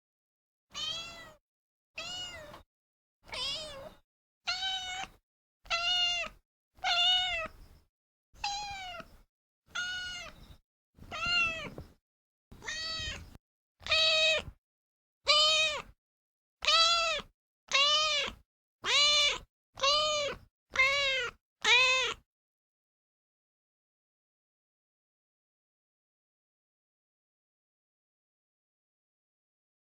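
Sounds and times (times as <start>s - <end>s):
cat meowing: 0.7s - 1.4s, 2.0s - 2.6s, 3.3s - 7.6s, 8.4s - 10.4s, 11.0s - 11.9s, 12.6s - 14.6s, 15.3s - 16.0s, 16.6s - 22.2s.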